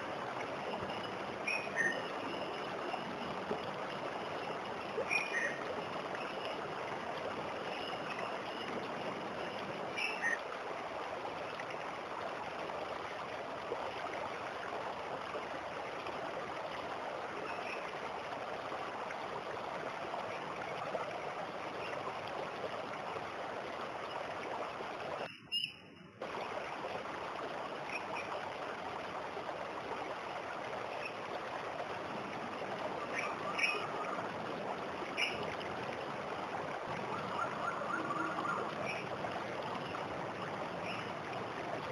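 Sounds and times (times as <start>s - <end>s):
bird chirps: 25.3s - 25.9s.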